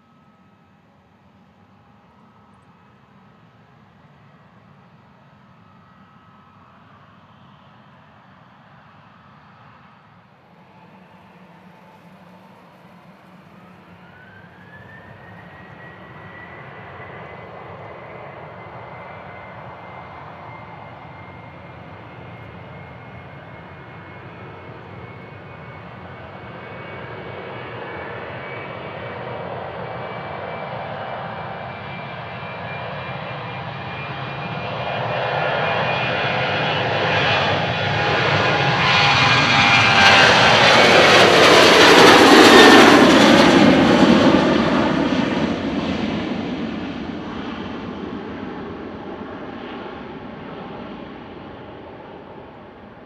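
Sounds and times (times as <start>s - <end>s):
jet engines whining: 2.1s - 53.0s.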